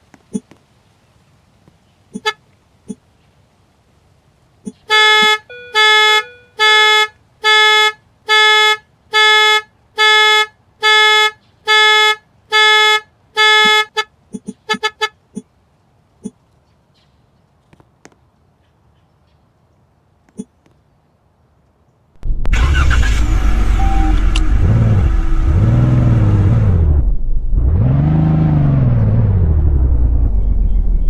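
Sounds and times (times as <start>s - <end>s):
car horn honking: 2.2s - 2.4s, 4.7s - 15.2s, 22.5s - 27.0s.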